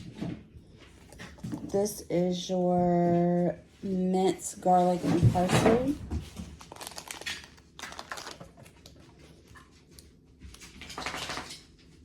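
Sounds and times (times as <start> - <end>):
plastic packets being handled: 4.7 - 9.7.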